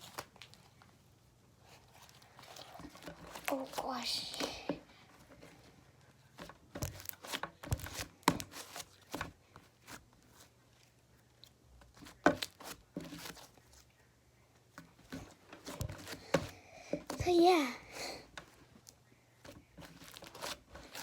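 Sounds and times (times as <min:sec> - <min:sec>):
slime being kneaded by hand: 0:01.7 - 0:04.8, 0:06.3 - 0:13.9, 0:19.4 - 0:21.0.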